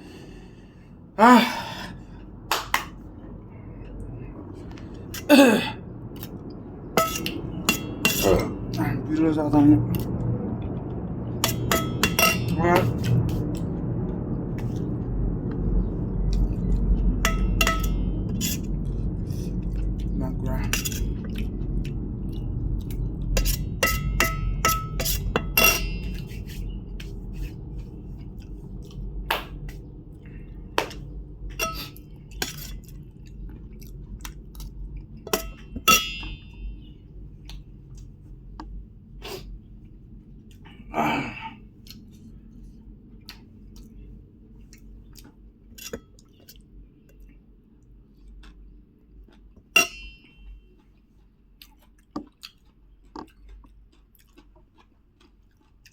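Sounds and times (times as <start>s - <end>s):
chewing: 18.1s - 23.9s, 26.0s - 31.1s, 31.7s - 35.8s, 36.4s - 55.9s.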